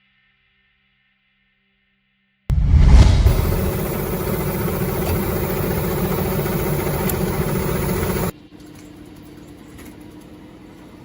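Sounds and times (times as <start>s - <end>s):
machine engine humming: 2.5s - 8.3s.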